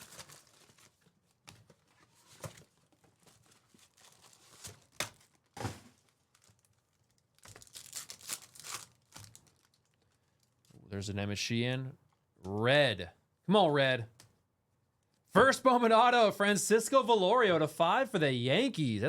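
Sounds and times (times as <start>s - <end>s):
foil wrappers crinkling and tearing: 0.0s - 10.7s.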